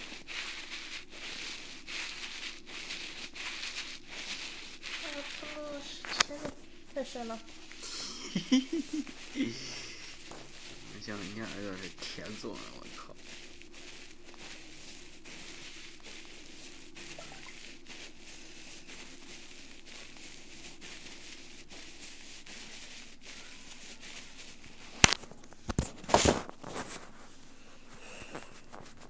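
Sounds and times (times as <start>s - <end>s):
steady hiss: 0.0s - 29.0s
tool scratching in ear: 0.9s - 29.0s.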